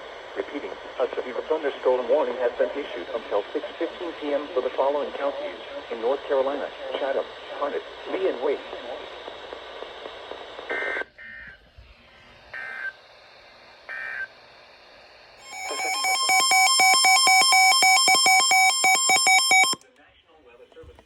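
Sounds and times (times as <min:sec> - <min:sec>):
rapidly pulsing electronic alert tone: 0:15.5 - 0:19.8
warbling digital data tones: 0:15.5 - 0:19.8.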